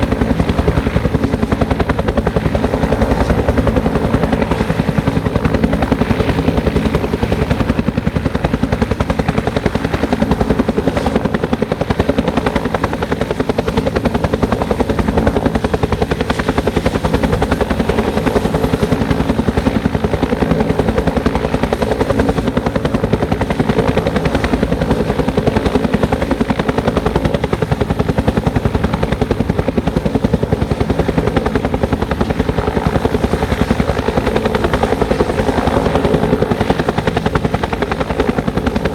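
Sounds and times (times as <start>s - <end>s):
helicopter engine hum: 0.0s - 38.9s
helicopter rotor chopping: 0.0s - 38.9s.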